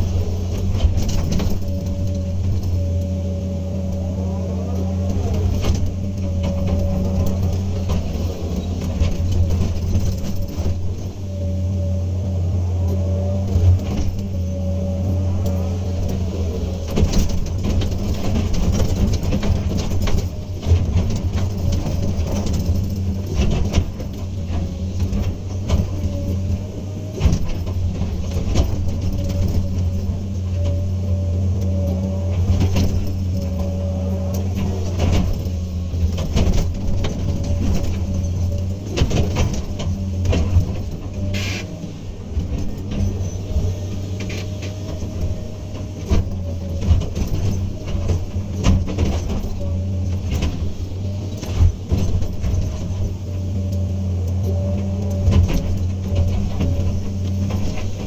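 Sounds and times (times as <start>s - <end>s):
knocks and clanks: 0.0s - 11.3s, 12.8s - 58.0s
excavator diesel engine: 0.0s - 58.0s.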